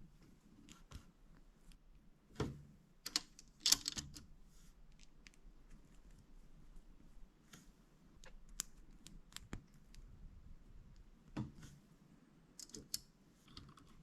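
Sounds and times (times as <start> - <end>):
plastic building blocks clicking: 3.0 - 4.2.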